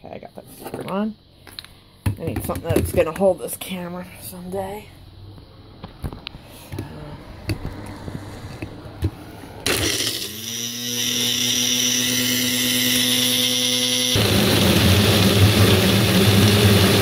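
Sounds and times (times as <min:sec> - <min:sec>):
blender motor whining: 0:09.6 - 0:17.0.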